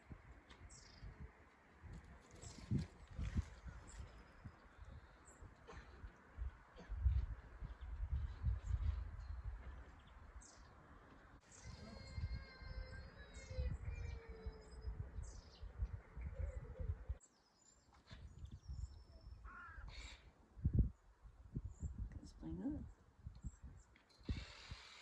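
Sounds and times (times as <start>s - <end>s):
crow-like caw: 19.4s - 20.2s.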